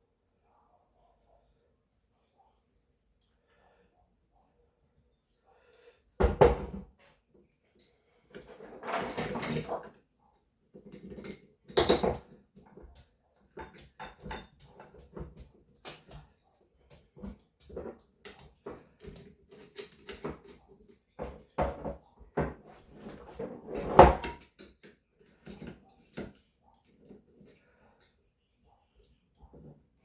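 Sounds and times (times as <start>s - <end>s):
wrench and metal parts clanking: 7.8s - 9.9s.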